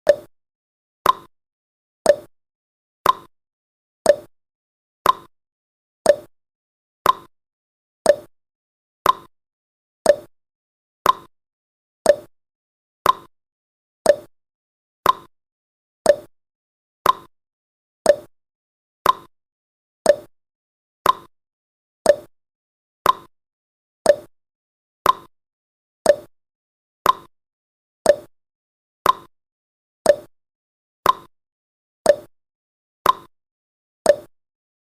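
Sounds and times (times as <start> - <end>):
timer ticking: 0.0 - 0.3, 1.0 - 1.3, 2.1 - 2.3, 3.0 - 3.3, 4.1 - 4.3, 5.0 - 5.3, 6.1 - 6.3, 7.0 - 7.3, 8.1 - 8.3, 9.0 - 9.3, 10.0 - 10.3, 11.0 - 11.3, 12.0 - 12.3, 13.0 - 13.3, 14.0 - 14.3, 15.0 - 15.3, 16.1 - 16.3, 17.0 - 17.3, 18.1 - 18.3, 19.0 - 19.3, 20.1 - 20.3, 21.0 - 21.3, 22.1 - 22.3, 23.0 - 23.3, 24.1 - 24.3, 25.0 - 25.3, 26.0 - 26.3, 27.0 - 27.3, 28.1 - 28.3, 29.0 - 29.3, 30.1 - 30.3, 31.0 - 31.3, 32.1 - 32.3, 33.0 - 33.3, 34.1 - 34.3.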